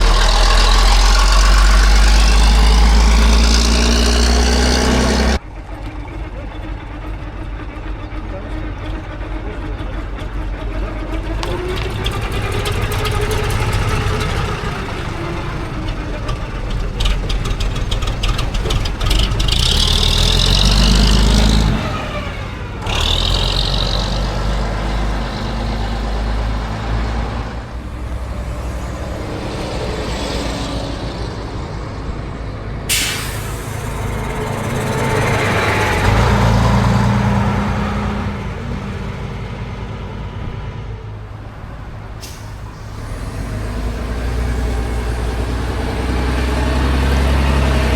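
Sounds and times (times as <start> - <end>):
sharp crack: 0.0 - 5.4
diesel bus engines pulling away: 0.0 - 47.9
air brakes hissing: 32.9 - 36.0, 42.2 - 43.7.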